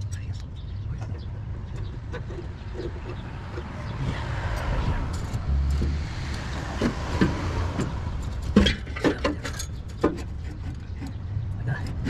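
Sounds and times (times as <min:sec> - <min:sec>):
low vehicle rumble: 0:00.0 - 0:12.0
sharp knocks and clinks: 0:05.1 - 0:12.0.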